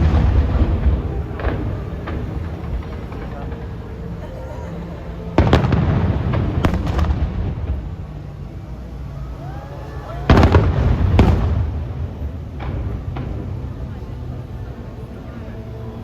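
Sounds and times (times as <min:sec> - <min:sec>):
fireworks booming: 0:00.0 - 0:08.7, 0:10.2 - 0:14.6
rumbling echo: 0:00.0 - 0:16.0.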